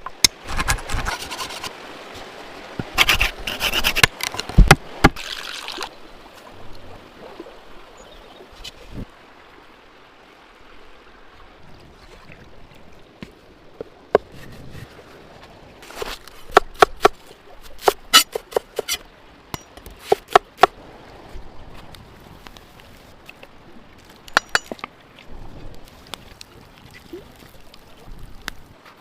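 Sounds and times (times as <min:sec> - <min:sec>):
steady low hiss: 0:20.8 - 0:29.0.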